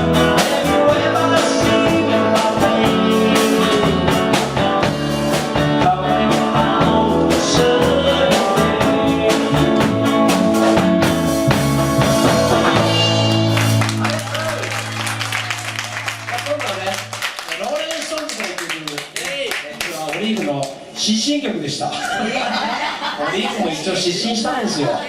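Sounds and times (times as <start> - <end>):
person singing: 0.0 - 10.8
drums: 0.0 - 17.6
rock band playing: 0.0 - 17.6.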